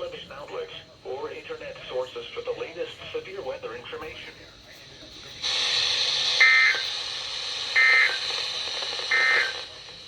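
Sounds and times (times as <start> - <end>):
steady hiss: 4.2 - 10.0.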